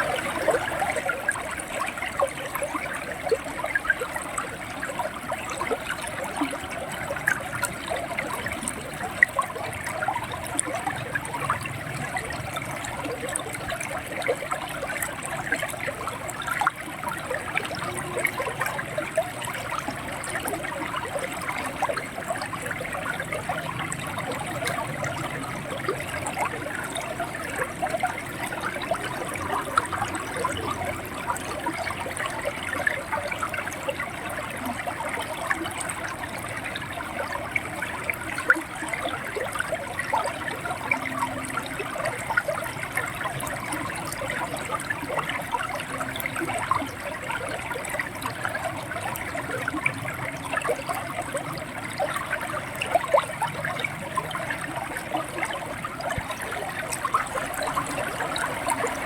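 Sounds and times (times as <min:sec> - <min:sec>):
river water gurgling and splashing: 0:00.0 - 0:59.0.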